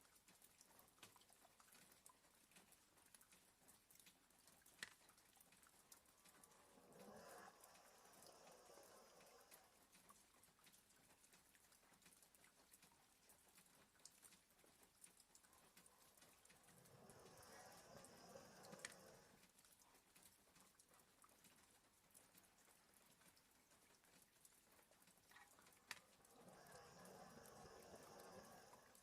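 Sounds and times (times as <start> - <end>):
rain tapping on a window: 0.0 - 29.0
faint dog snoring: 5.6 - 10.7, 15.4 - 20.0, 25.3 - 29.0.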